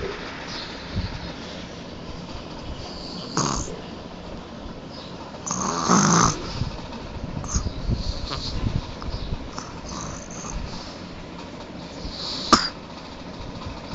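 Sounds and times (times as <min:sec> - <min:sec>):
soft breathing: 0:02.8 - 0:03.8, 0:07.4 - 0:11.2
person snoring heavily: 0:02.9 - 0:03.8, 0:05.4 - 0:06.7, 0:09.5 - 0:10.7, 0:12.1 - 0:12.8.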